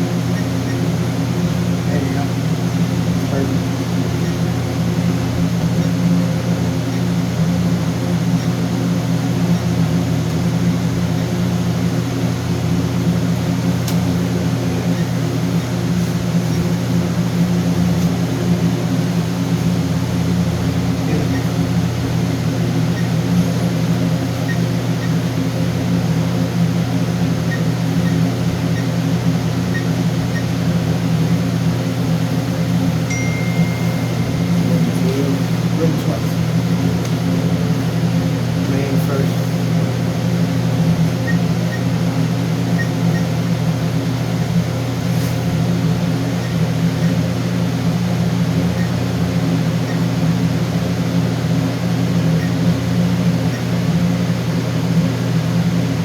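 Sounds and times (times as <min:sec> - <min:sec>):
low machine hum: 0:00.0 - 0:56.0
alarm keypad beeps: 0:33.1 - 0:35.3.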